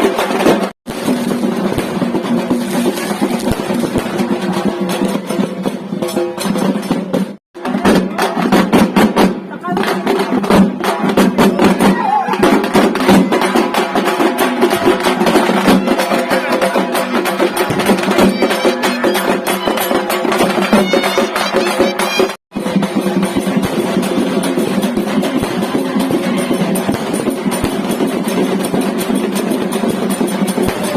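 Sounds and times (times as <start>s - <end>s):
rapid drumming: 0.0s - 30.9s
wind instrument melody: 11.8s - 22.4s.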